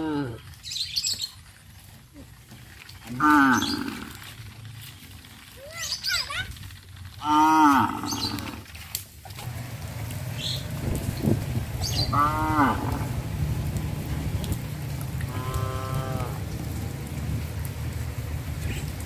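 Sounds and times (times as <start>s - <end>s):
cattle mooing: 3.1s - 4.2s, 7.2s - 8.6s, 12.0s - 13.3s, 15.2s - 16.5s
steady low rumble: 9.4s - 19.0s.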